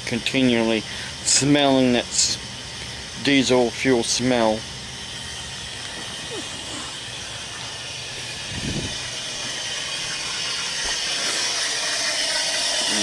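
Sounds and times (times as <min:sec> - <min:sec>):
faucet running into sink: 0:09.8 - 0:13.0.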